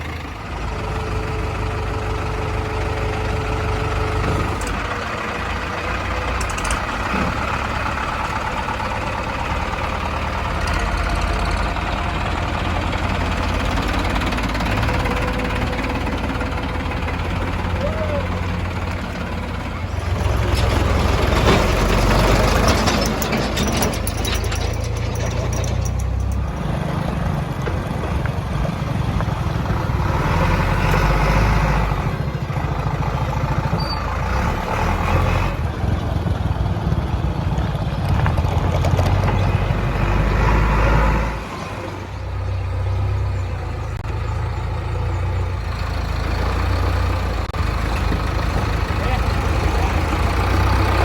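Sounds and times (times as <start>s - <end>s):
diesel engine running: 0.0s - 51.0s.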